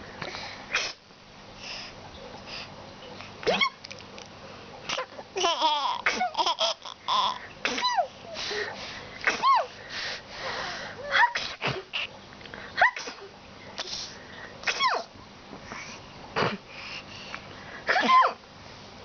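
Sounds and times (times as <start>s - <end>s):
person sneezing: 7.6s - 9.7s, 12.8s - 15.1s, 17.9s - 18.4s.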